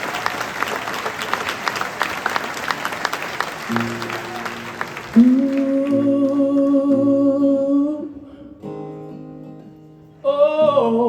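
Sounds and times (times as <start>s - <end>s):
audience clapping: 0.0s - 7.1s.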